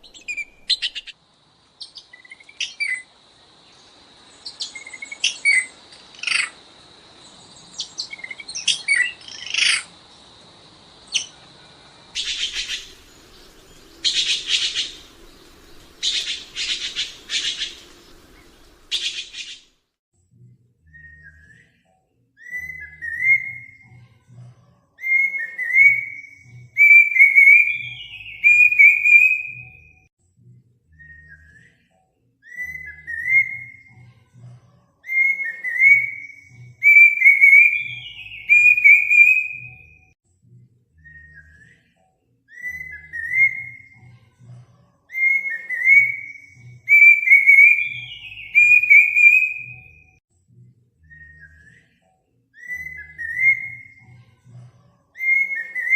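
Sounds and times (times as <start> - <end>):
bird whistling song: 0.0 - 1.2, 1.8 - 3.1, 4.4 - 6.5, 7.7 - 9.9, 12.2 - 19.7, 20.8 - 24.0, 25.0 - 30.1, 30.9 - 34.0, 35.0 - 40.2, 41.0 - 44.1, 45.1 - 50.2, 51.0 - 54.2, 55.2 - 55.9.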